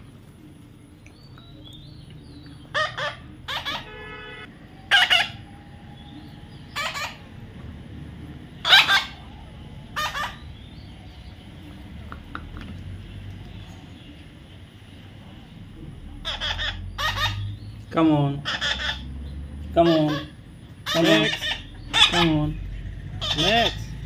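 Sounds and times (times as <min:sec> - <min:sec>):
parrot screeching: 0:02.7 - 0:04.0, 0:04.9 - 0:05.5, 0:06.7 - 0:07.3, 0:08.6 - 0:09.3, 0:09.9 - 0:10.5, 0:16.2 - 0:17.6, 0:18.4 - 0:19.1, 0:19.8 - 0:22.5, 0:23.1 - 0:23.9.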